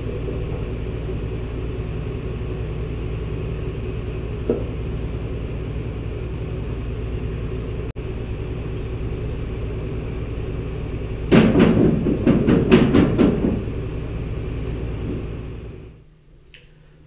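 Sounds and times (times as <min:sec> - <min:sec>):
tractor engine running: 0:00.0 - 0:16.0
loud rattling clattering knocks: 0:11.2 - 0:14.0.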